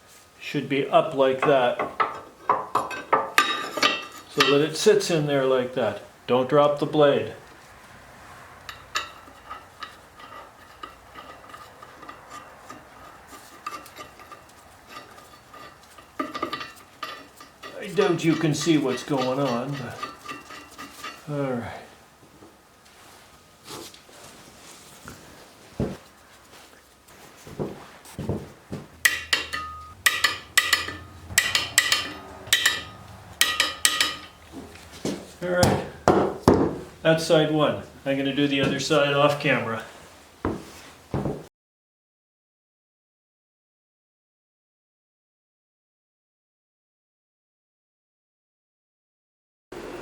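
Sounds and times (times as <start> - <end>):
metal-on-metal knocks: 1.4 - 4.6, 28.2 - 38.0
metal clicks and clinks: 29.0 - 36.1.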